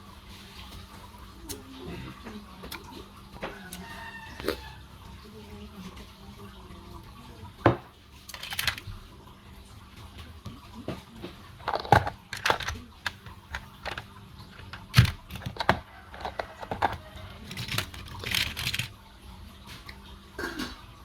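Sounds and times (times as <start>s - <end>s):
crinkling: 8.2s - 9.0s, 11.5s - 19.0s.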